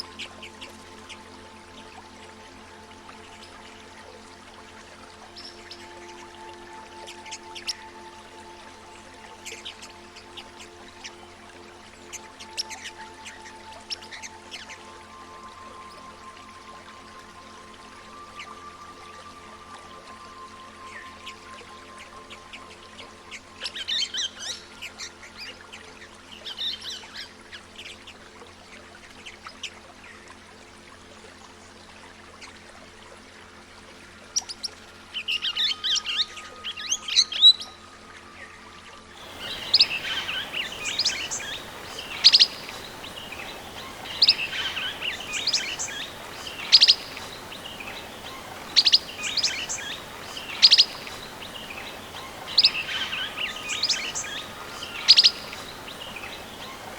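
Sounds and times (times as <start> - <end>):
faint steady drone: 0.0 - 25.9, 36.0 - 56.9
parrots chirping: 39.2 - 56.9
steady hiss: 39.2 - 56.9.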